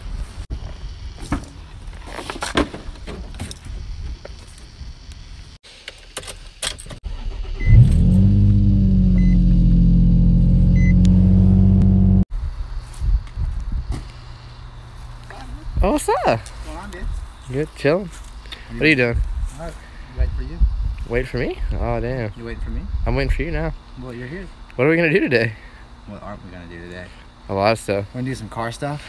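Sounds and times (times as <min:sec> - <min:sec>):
car engine starting and idling: 0:06.9 - 0:12.3
short high beeps: 0:09.2 - 0:09.4, 0:10.7 - 0:11.0.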